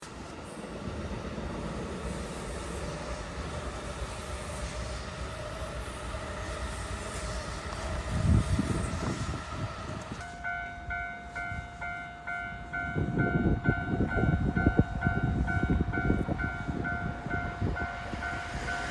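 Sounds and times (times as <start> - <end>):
train rumbling on rails: 0.0 - 18.9
level crossing warning bell: 10.2 - 18.9.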